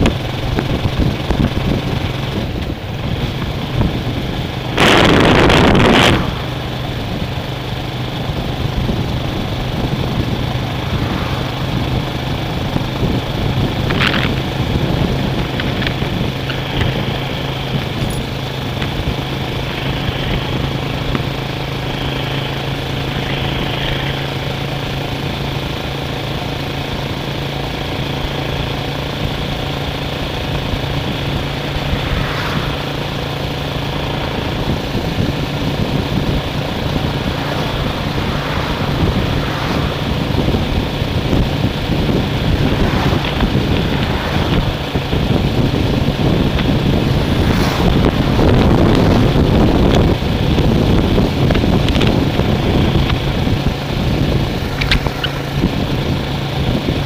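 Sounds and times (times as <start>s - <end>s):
steady low engine hum: 0.0s - 57.0s
very loud burst: 4.7s - 7.2s.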